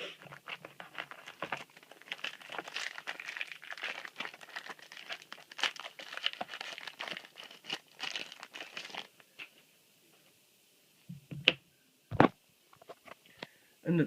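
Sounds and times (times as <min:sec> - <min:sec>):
foil wrapper crinkling: 0:00.2 - 0:09.1.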